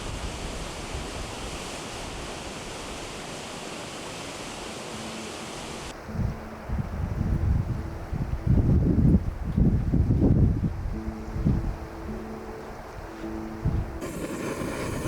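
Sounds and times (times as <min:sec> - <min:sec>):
rushing river water: 0:00.0 - 0:06.0
wind buffeting on microphone: 0:06.1 - 0:12.2, 0:12.9 - 0:15.0.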